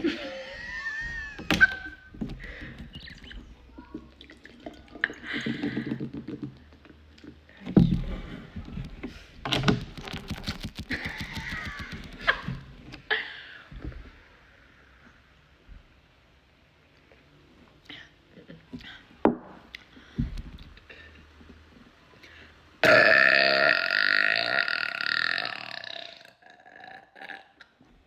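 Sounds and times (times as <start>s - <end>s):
small clicks and knocks: 8.6s - 13.0s
woman burping: 22.8s - 27.7s.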